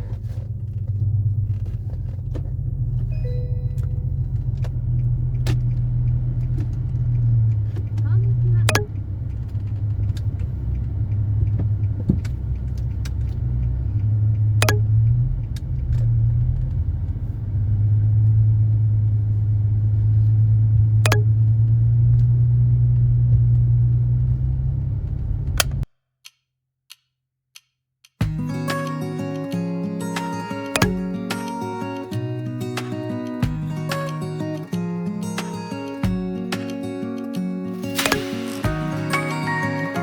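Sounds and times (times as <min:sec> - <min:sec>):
car engine and road noise: 0:00.0 - 0:25.9, 0:28.3 - 0:40.0
sharp clicks: 0:25.6 - 0:40.0.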